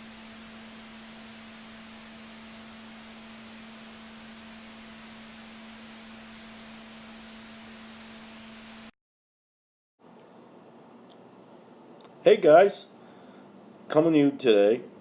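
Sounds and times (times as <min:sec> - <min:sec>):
low electronic hum tone: 0:00.0 - 0:09.0.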